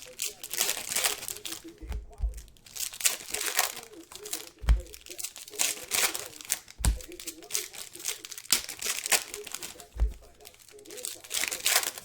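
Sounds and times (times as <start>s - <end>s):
foil wrappers crinkling and tearing: 0.0s - 12.0s
dull low thumps: 1.8s - 2.6s, 4.6s - 5.0s, 6.8s - 7.2s, 10.0s - 10.4s.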